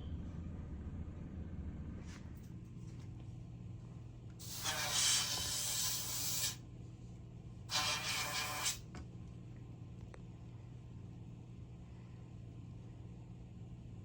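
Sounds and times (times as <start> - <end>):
steady low hum: 0.0 - 14.0
aerosol can hissing: 4.4 - 6.6, 7.7 - 8.8.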